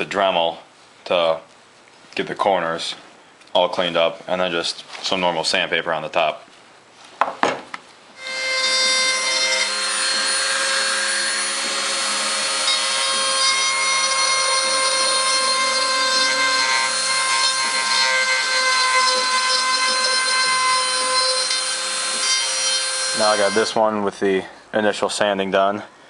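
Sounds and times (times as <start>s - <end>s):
rotary tool grinding: 8.2s - 23.8s.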